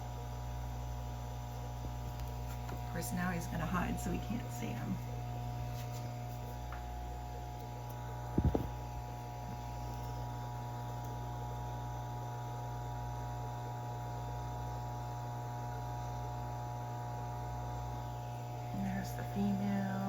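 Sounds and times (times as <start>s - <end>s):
low electrical hum: 0.0s - 20.0s
brief low thump: 8.3s - 8.8s.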